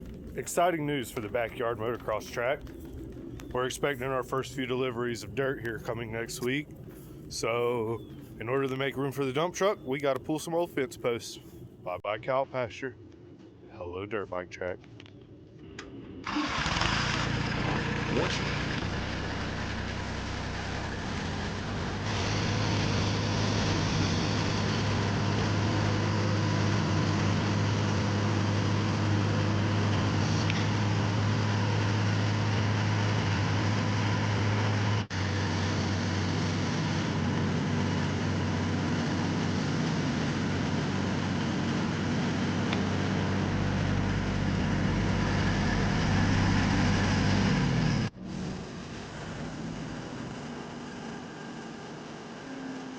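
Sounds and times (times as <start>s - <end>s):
machine engine running under load: 16.2s - 52.9s.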